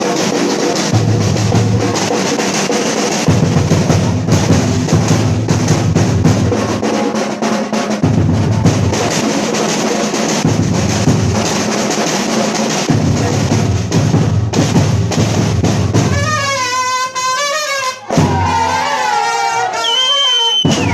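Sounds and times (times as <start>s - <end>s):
drum ensemble playing fast groove: 0.0s - 20.9s
wavering high whistle tone: 19.7s - 20.9s.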